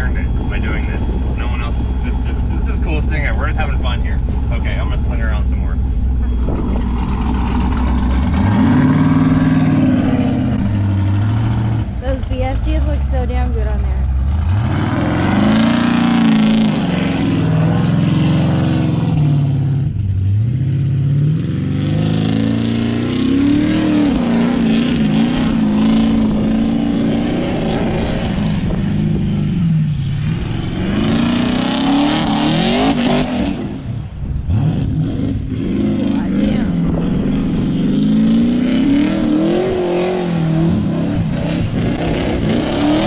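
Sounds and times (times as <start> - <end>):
engine revving hard: 6.3 - 43.0.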